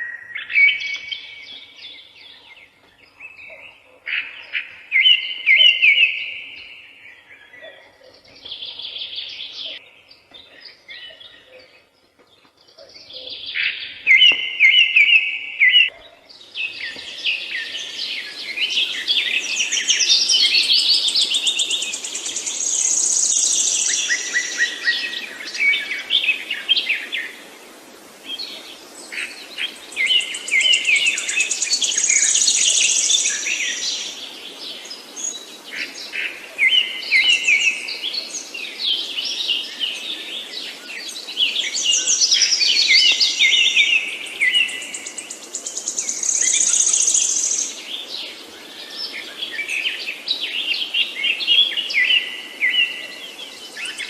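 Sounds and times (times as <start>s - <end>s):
songbirds chirping: 0.0s - 54.0s
steady hiss: 16.4s - 54.0s.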